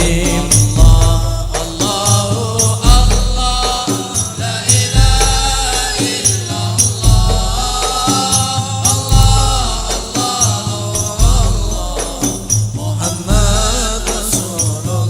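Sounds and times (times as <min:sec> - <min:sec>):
deep bass drum strokes: 0:00.0 - 0:14.6
frame drums: 0:00.0 - 0:15.0
jingling tambourine: 0:00.0 - 0:15.0.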